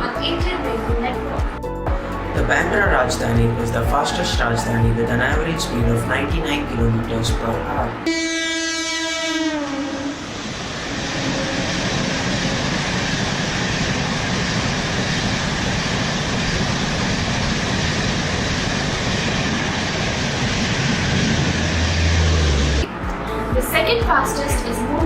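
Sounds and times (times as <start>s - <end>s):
passing train rumble: 0.0s - 25.0s
train horn: 8.0s - 12.2s.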